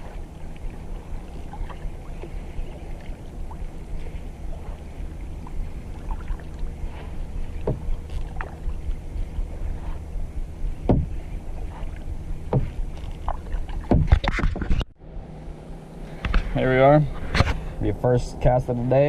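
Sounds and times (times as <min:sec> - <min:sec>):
water drips: 0:00.0 - 0:06.8, 0:07.4 - 0:09.4
paddle splashing in water: 0:00.0 - 0:14.8
steady low rumble: 0:00.0 - 0:19.0.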